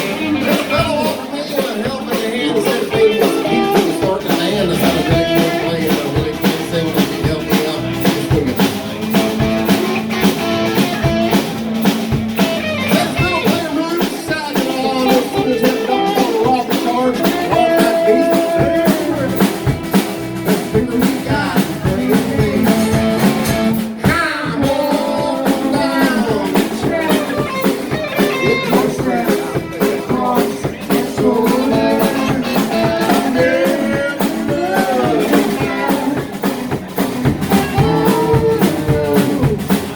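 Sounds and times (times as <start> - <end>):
person singing: 0.0 - 11.4, 12.8 - 39.9
drum kit beat: 0.0 - 39.9
electric guitar: 0.0 - 39.9.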